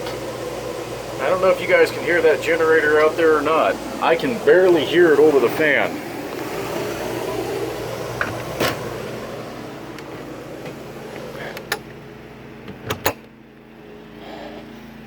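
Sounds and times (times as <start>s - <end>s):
air conditioner fan blowing: 0.0s - 15.0s
generator humming: 0.0s - 15.0s
sharp clicks and knocks: 12.6s - 13.3s.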